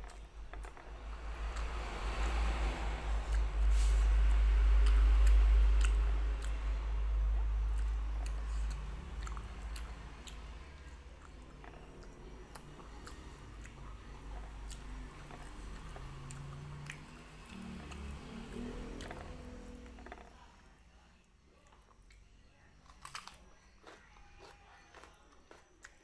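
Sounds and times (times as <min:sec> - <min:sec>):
loud low rumble: 0:00.0 - 0:16.3
close-miked chewing: 0:00.0 - 0:20.5, 0:21.5 - 0:26.0.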